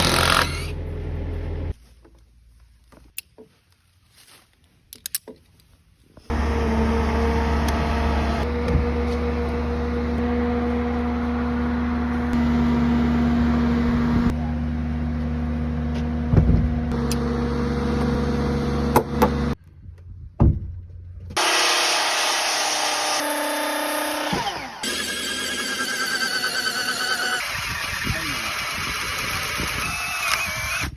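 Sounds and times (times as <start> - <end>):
engine running: 6.3 - 19.6.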